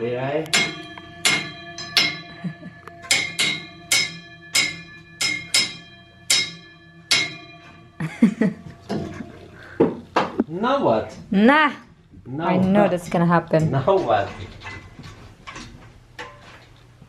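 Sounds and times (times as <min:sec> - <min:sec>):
metal object struck ringing: 0:00.0 - 0:11.1.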